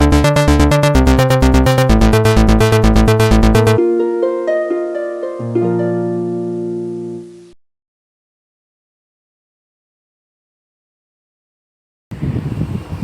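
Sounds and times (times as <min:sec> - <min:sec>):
beat with heavy bass: 0:00.0 - 0:03.8
plucked melody: 0:00.0 - 0:07.6.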